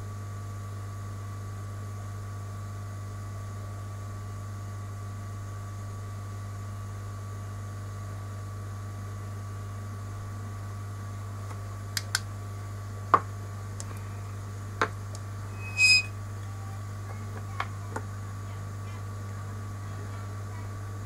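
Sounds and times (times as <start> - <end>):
steady electrical hum: 9.9 - 21.0
thin beep-like tone: 15.6 - 16.1.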